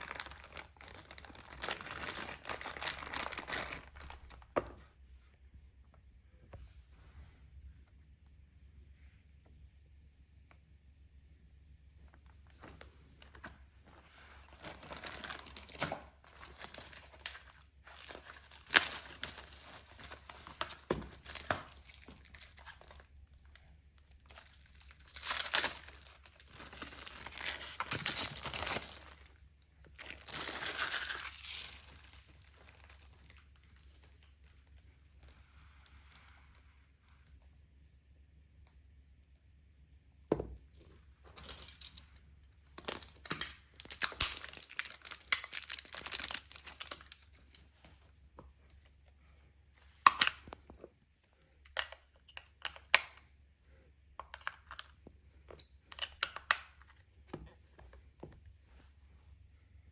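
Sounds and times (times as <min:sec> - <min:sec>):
packaging crinkling and tearing: 0:00.0 - 0:04.6, 0:14.4 - 0:34.8, 0:42.8 - 0:47.7.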